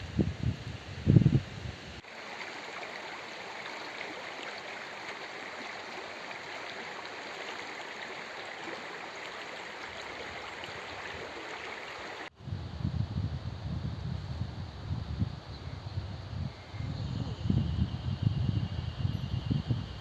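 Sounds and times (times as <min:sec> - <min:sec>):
wind buffeting microphone: 0:00.0 - 0:02.0, 0:12.4 - 0:20.0
stream flowing over stones: 0:02.0 - 0:12.3.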